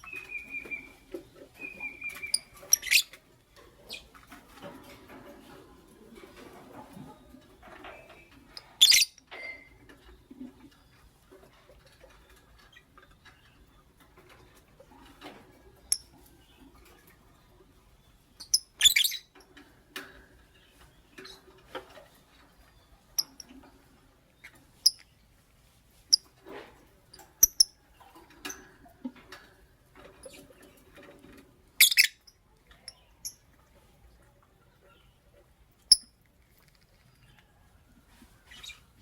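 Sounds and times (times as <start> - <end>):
lovebirds chirping: 0.0 - 4.2, 7.1 - 11.1, 15.8 - 19.4, 22.4 - 25.4, 27.1 - 28.8, 30.0 - 33.8, 34.6 - 39.0.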